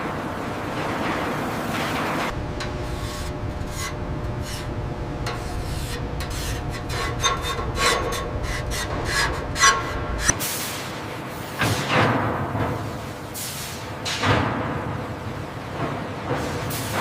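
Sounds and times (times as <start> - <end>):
steady low rumble: 2.3 - 10.4
rasping metal scrapes: 2.6 - 10.4.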